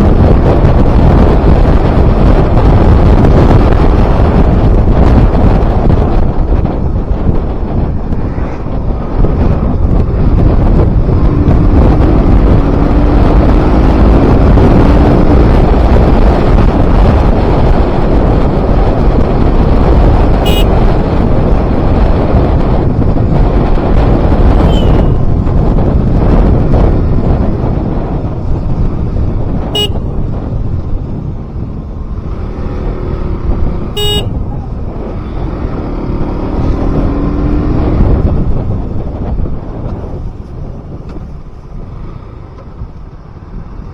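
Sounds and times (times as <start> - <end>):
motorcycle engine: 0.0 - 43.9
wind buffeting microphone: 0.0 - 43.9
short horn toot: 20.4 - 20.8, 24.6 - 25.3, 29.8 - 30.1, 34.0 - 34.6.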